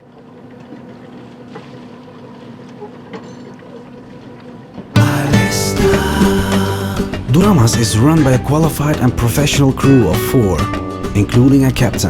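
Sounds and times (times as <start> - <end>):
loud music: 5.0 - 11.4
boat engine humming: 5.0 - 12.0.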